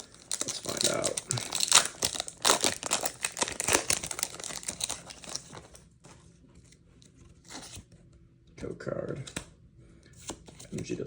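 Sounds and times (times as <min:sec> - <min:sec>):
foil wrapper crinkling: 0:00.0 - 0:05.8.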